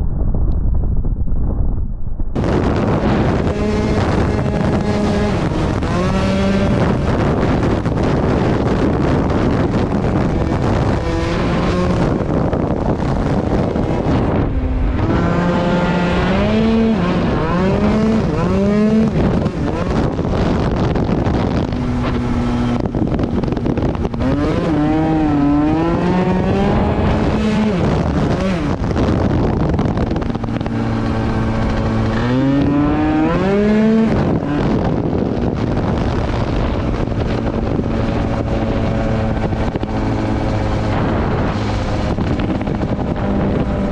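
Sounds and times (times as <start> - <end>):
wind noise on microphone: 0.0 - 43.9
two-stroke scooter engine: 27.9 - 32.8.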